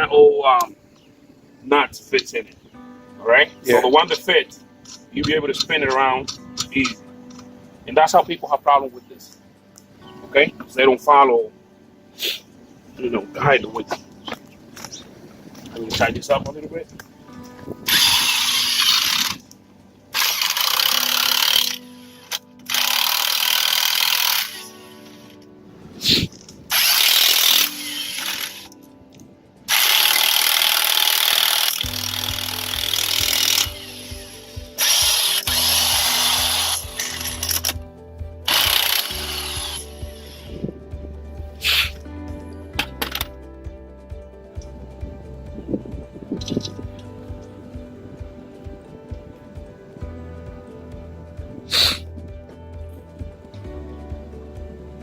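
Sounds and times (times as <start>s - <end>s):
background music: 0.0s - 55.0s
impact wrench bursts: 17.9s - 19.4s, 20.2s - 25.3s, 26.0s - 28.7s, 29.7s - 37.8s, 38.5s - 40.6s.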